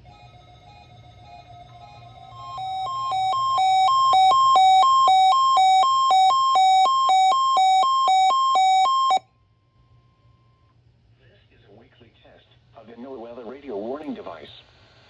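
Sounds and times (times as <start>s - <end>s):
shrill two-note alarm warble: 2.3s - 9.2s
steady tone: 2.3s - 9.2s.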